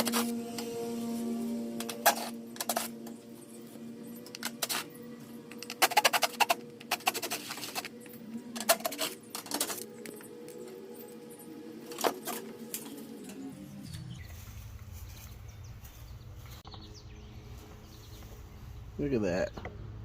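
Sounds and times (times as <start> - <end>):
steady whir: 0.0 - 14.8
tools and sheet metal clanking: 1.7 - 3.2, 4.2 - 10.2.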